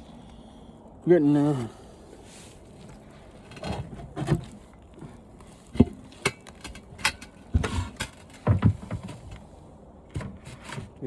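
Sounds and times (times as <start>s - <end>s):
television parts knocking and scraping: 3.5s - 9.4s.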